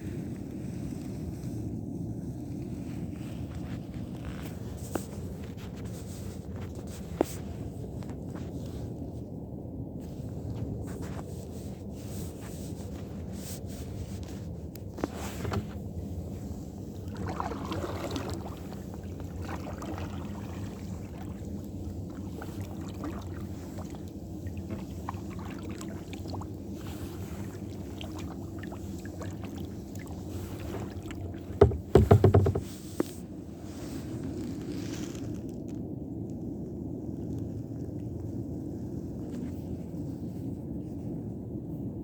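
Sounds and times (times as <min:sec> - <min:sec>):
paddle strokes and splashes: 0:00.1 - 0:09.4, 0:10.0 - 0:36.0
water noise: 0:10.1 - 0:36.0
loud knocks: 0:31.6 - 0:32.8.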